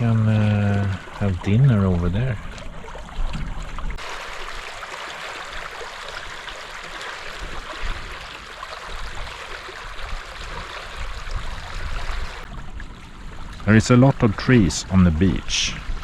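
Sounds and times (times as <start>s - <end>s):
water rushing along hulls: 0.0s - 16.0s
wind rumble on microphone: 8.9s - 16.0s.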